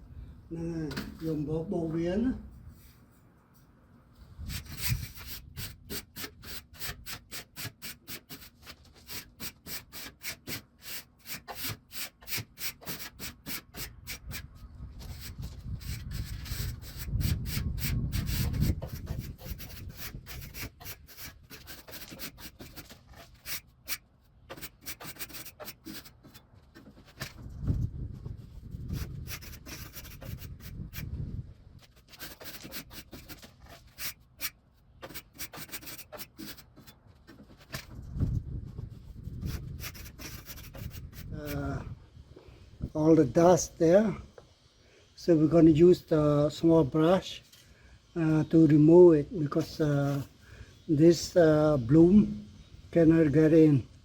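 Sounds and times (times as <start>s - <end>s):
brush scrubbing coils: 4.5s - 27.4s, 28.2s - 31.1s, 31.8s - 37.9s, 38.8s - 41.8s.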